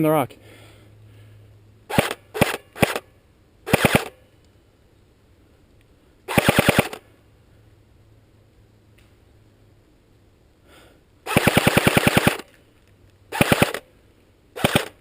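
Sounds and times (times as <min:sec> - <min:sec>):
airsoft gun shots: 0:01.9 - 0:03.0, 0:03.7 - 0:04.2, 0:06.3 - 0:07.0, 0:11.3 - 0:12.5, 0:13.3 - 0:13.8, 0:14.6 - 0:15.0.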